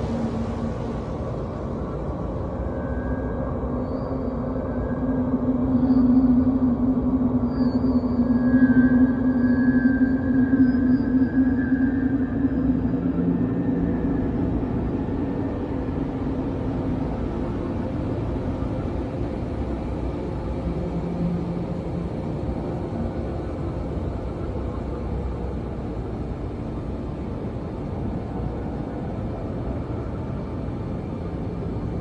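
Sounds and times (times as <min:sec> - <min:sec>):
low rumbling drone: 0:00.0 - 0:32.0.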